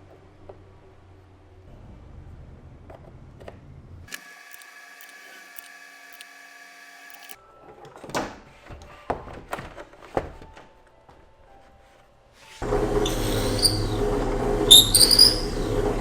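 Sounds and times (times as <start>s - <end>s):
mechanical whine: 12.6s - 16.0s.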